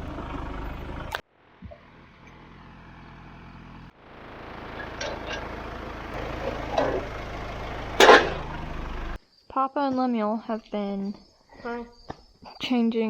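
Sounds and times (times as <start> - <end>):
farm machinery engine running: 0.0 - 9.2.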